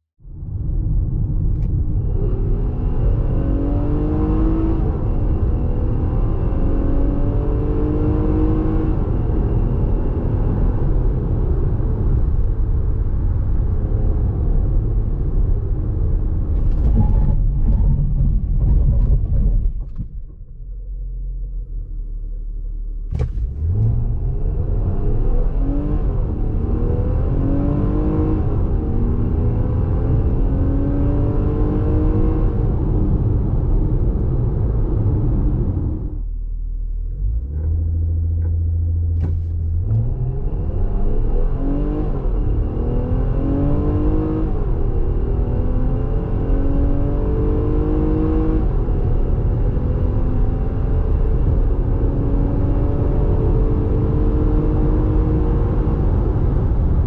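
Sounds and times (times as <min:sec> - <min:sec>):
car engine accelerating: 0:00.4 - 0:57.0.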